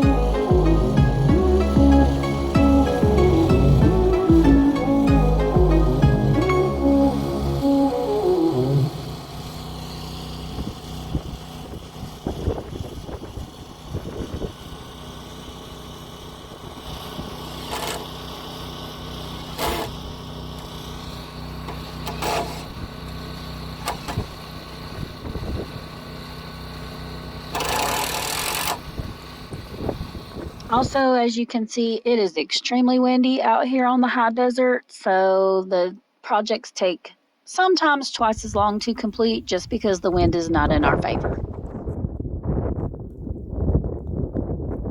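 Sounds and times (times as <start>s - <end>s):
small motor running: 0.0s - 31.0s.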